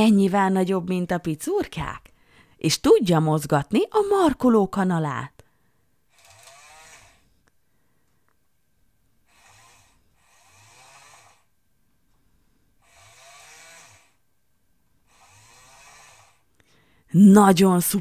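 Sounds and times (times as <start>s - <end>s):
toy electric motor whirring: 6.1s - 7.4s, 9.3s - 11.5s, 12.8s - 14.2s, 15.0s - 16.4s.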